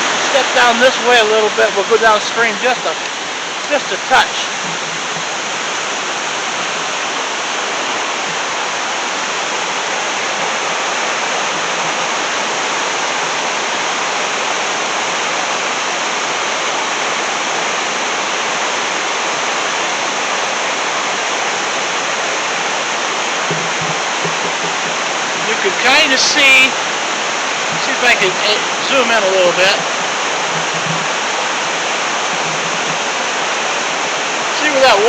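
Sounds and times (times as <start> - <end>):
river rapids roaring: 0.0 - 35.0.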